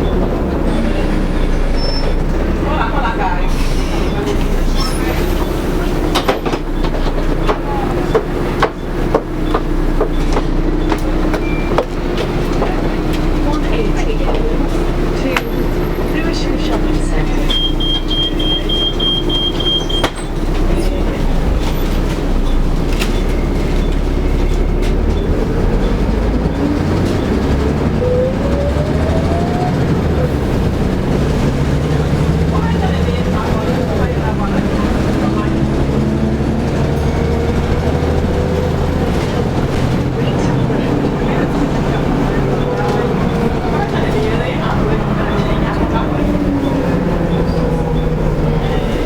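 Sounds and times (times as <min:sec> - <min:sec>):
bus ticking clicks: 0:00.0 - 0:49.0
rising engine whine: 0:22.7 - 0:49.0.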